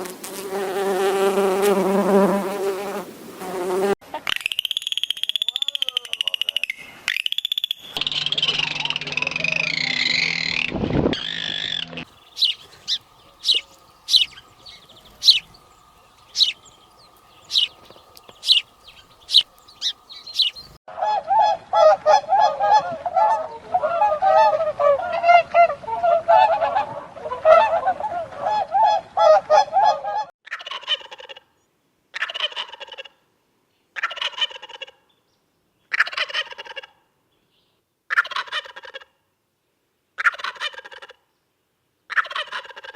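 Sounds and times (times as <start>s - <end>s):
birds calling: 5.9s - 20.8s
faint steady hum: 12.1s - 20.8s.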